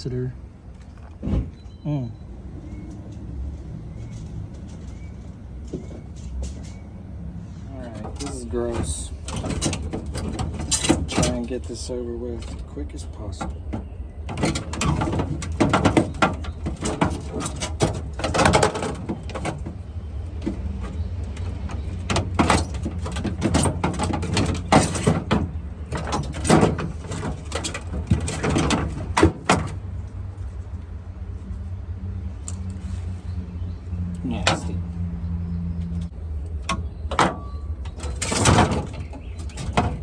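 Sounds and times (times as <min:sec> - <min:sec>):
clicks and knocks of parts: 0:07.8 - 0:30.8, 0:32.4 - 0:33.1, 0:34.1 - 0:34.9, 0:35.8 - 0:40.0
plastic rattling: 0:07.9 - 0:30.5, 0:35.9 - 0:40.0.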